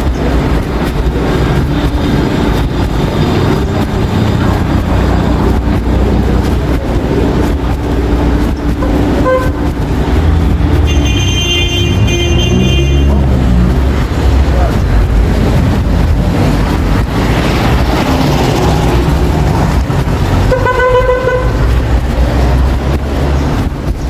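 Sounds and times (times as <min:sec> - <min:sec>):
traffic rumble: 0:00.0 - 0:24.0
car horn toot: 0:08.8 - 0:09.7, 0:10.8 - 0:13.2, 0:20.5 - 0:21.6.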